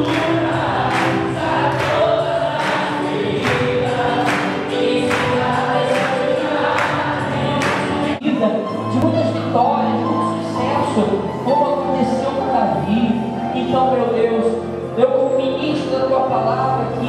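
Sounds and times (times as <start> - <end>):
choir singing gospel music: 0.0 - 8.3.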